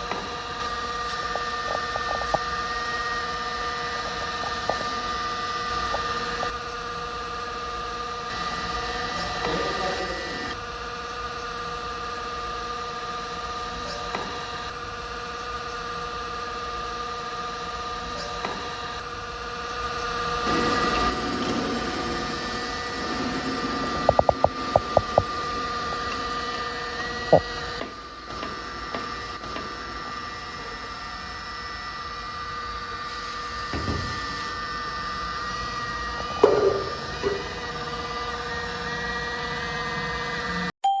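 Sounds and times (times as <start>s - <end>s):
hydraulic pump whining: 0.0s - 40.7s.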